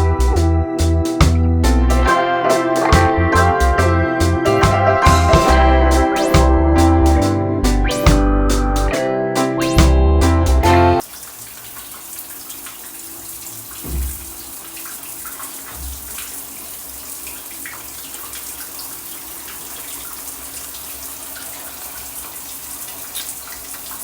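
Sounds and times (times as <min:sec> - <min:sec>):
tap water running into sink: 0:11.0 - 0:24.0
low thump: 0:13.8 - 0:14.3.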